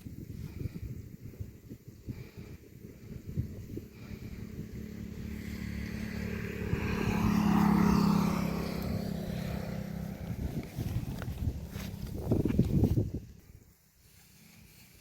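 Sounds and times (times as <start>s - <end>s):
small engine running: 2.1s - 13.0s
rustling and handling noises: 10.2s - 15.0s.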